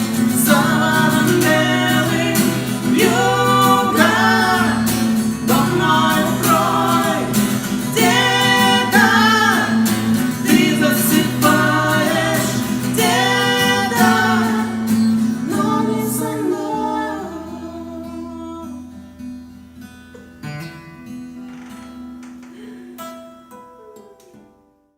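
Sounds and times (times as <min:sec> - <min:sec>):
person singing: 0:00.0 - 0:18.9
acoustic guitar: 0:00.0 - 0:24.9.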